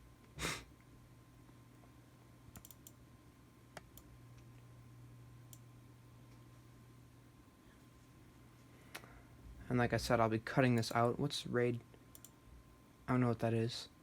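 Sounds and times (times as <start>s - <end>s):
low steady hum: 0.0s - 14.0s
computer keys clicking: 2.5s - 3.0s, 12.1s - 12.4s.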